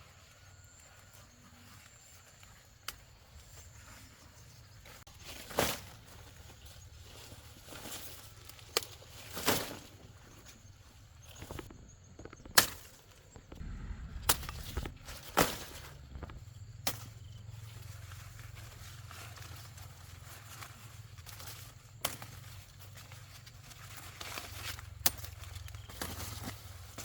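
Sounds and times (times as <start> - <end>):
faint low hum: 13.2 - 21.5.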